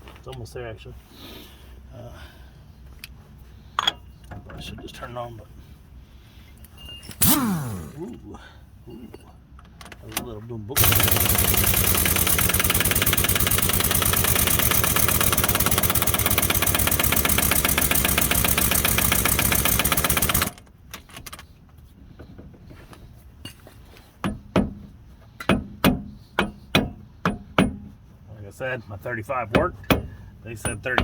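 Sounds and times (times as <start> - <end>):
impact wrench rattling: 7.2 - 8.0, 10.8 - 21.3
metal tools clinking: 9.0 - 21.5.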